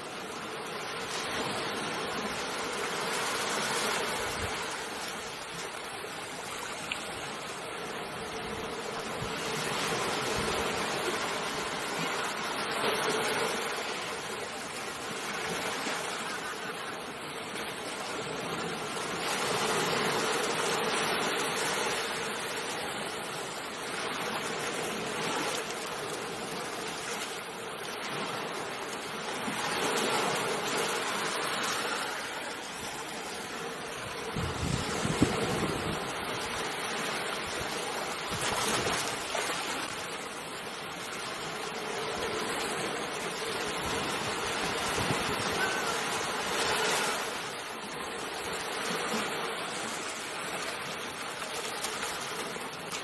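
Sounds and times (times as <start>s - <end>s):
ocean waves washing on shore: 0.0s - 53.0s.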